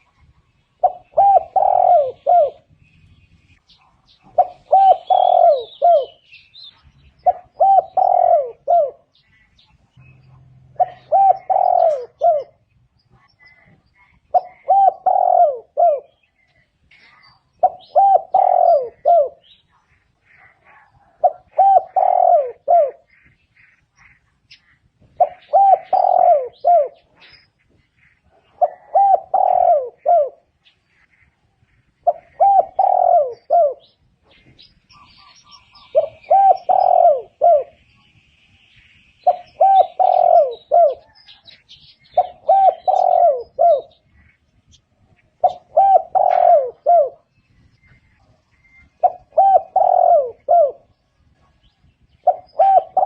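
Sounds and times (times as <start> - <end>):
dove cooing: 0.0 - 2.8, 3.8 - 9.3, 10.4 - 19.6, 20.2 - 23.3, 25.0 - 27.4, 28.2 - 31.0, 31.8 - 37.8, 39.2 - 44.8, 45.4 - 53.0
faint bird chirps: 0.0 - 53.0.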